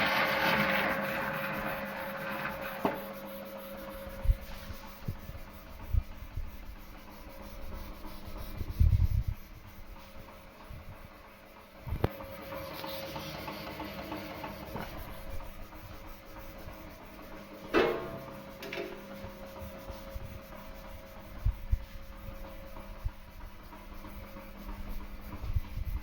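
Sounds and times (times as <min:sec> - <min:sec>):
bandsaw humming: 0:00.0 - 0:10.7.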